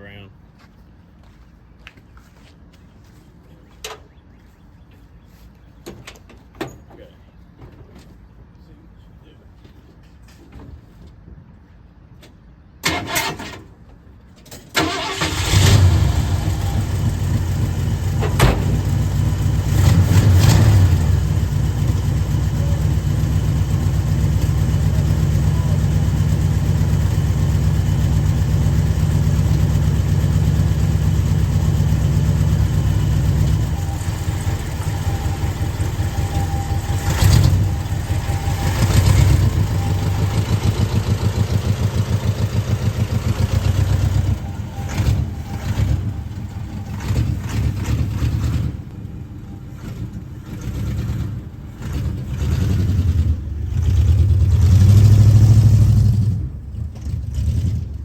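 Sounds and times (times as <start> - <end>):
truck engine starting and running: 12.7 - 58.0.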